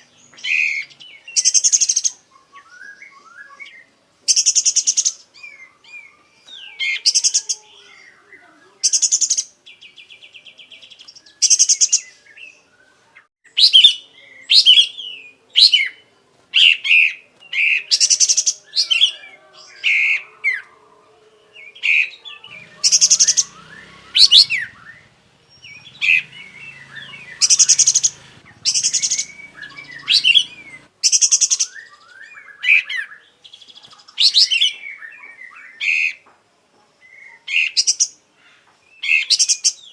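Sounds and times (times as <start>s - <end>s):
bird singing harsh rattling trills: 0.0s - 2.2s, 8.8s - 12.1s, 21.8s - 32.4s
bird whistling and chirping: 0.3s - 9.4s, 10.0s - 16.0s, 21.6s - 33.3s.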